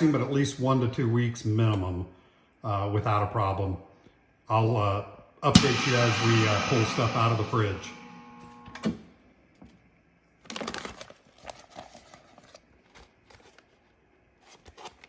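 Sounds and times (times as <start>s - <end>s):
plastic bag crinkling: 10.4s - 13.6s.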